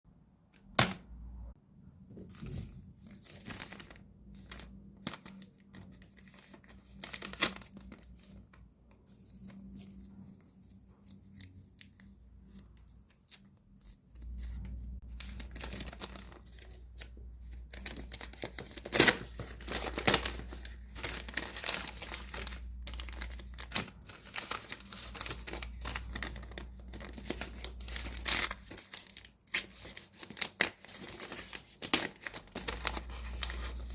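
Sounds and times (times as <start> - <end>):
plastic packaging crinkling and tearing: 2.5 - 8.6, 14.2 - 33.9.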